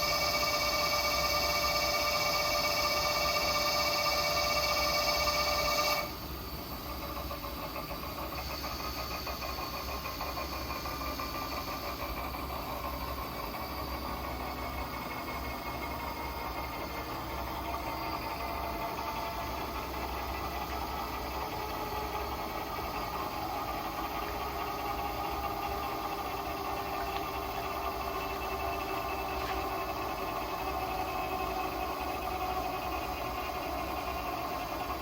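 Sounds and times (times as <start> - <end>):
lathe high whine: 0.0 - 35.0
machine hum: 0.0 - 35.0.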